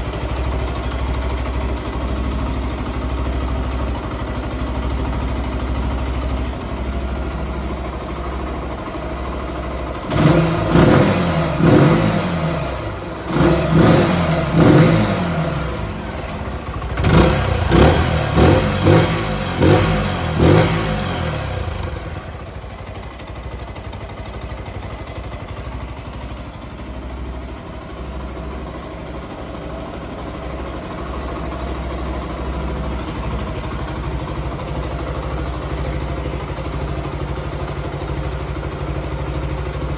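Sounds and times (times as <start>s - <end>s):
motorcycle engine idling and revving: 0.0s - 39.9s.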